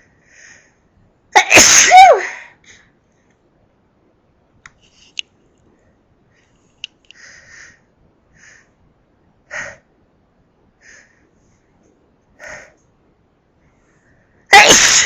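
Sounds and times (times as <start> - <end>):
breathing: 0.0 - 0.9, 2.4 - 3.4, 5.7 - 8.8, 10.8 - 11.8, 13.6 - 14.5.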